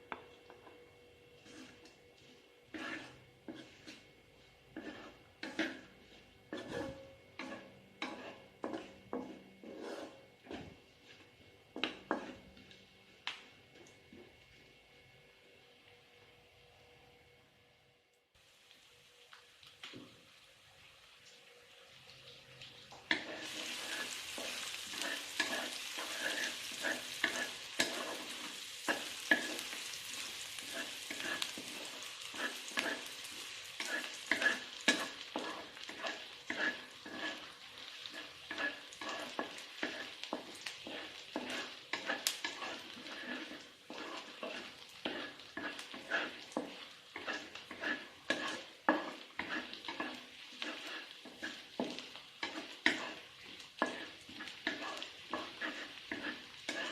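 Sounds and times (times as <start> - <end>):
food sizzling in a pan: 0.0 - 15.6, 18.4 - 56.9
spatula scraping a pan: 1.3 - 12.8, 23.1 - 56.9.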